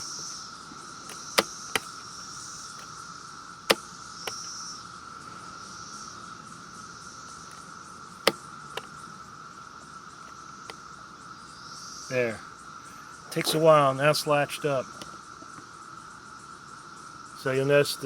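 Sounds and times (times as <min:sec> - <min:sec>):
cicadas chorus whining: 0:00.0 - 0:18.0
chainsaw trigger clicks: 0:01.0 - 0:02.1.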